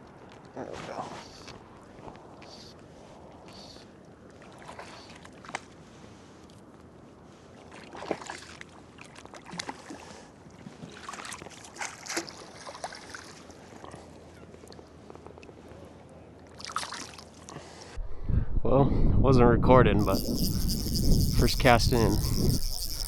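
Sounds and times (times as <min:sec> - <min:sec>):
river water splashing: 0:07.6 - 0:13.9, 0:16.5 - 0:17.5.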